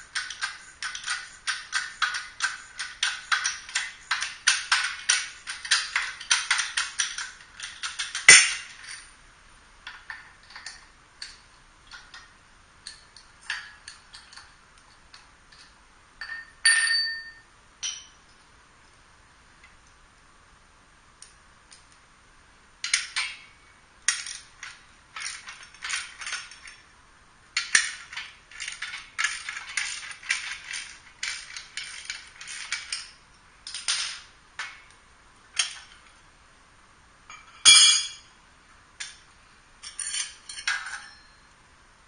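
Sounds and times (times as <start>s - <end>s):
light clinks: 39.8s - 41.5s.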